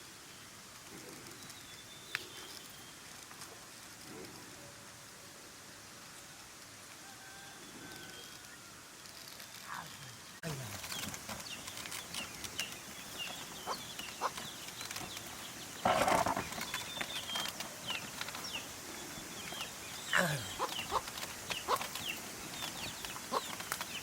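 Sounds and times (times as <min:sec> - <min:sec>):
small birds chirping: 0:00.3 - 0:03.2, 0:09.4 - 0:24.0.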